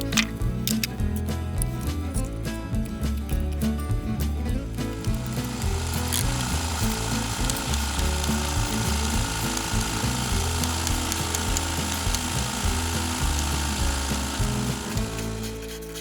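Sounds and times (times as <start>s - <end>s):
background music: 0.0s - 16.0s
chainsaw cutting wood: 4.8s - 16.0s.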